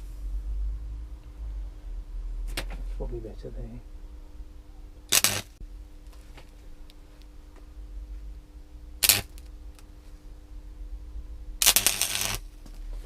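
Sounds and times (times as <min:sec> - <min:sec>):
steady hum: 0:00.0 - 0:13.0
welder arc bursts: 0:05.1 - 0:05.6, 0:09.0 - 0:09.5, 0:11.6 - 0:12.5.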